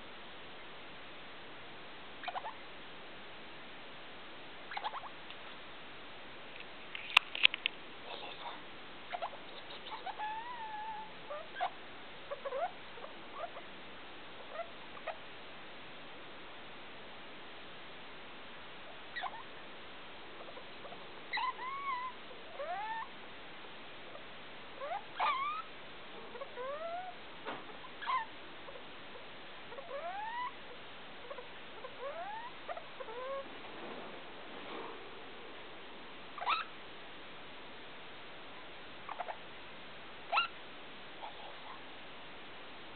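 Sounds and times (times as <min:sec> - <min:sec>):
background hiss: 0:00.0 - 0:42.9
degu squeaky chirps: 0:02.2 - 0:02.6, 0:04.7 - 0:05.1, 0:09.1 - 0:13.6, 0:19.1 - 0:19.5, 0:20.4 - 0:23.1, 0:24.8 - 0:25.7, 0:26.3 - 0:27.2, 0:27.9 - 0:28.8, 0:29.7 - 0:30.6, 0:31.2 - 0:33.4, 0:36.4 - 0:36.7, 0:39.1 - 0:39.4, 0:40.3 - 0:40.6.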